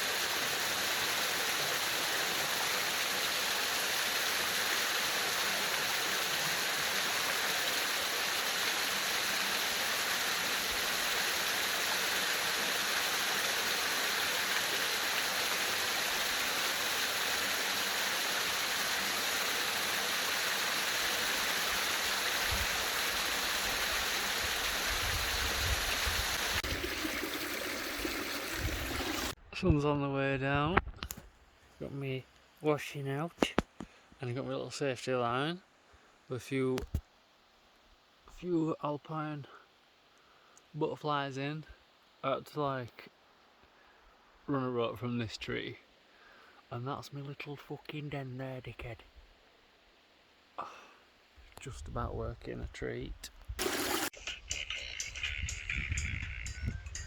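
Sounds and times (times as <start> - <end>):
stream rushing water: 0.0 - 29.4, 53.6 - 54.2.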